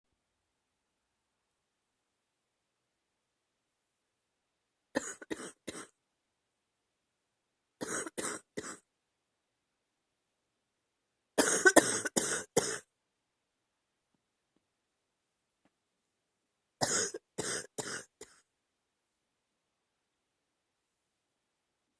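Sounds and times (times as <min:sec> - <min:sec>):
woman coughing: 0:05.0 - 0:05.9, 0:07.8 - 0:08.8, 0:11.4 - 0:12.9, 0:16.8 - 0:18.4.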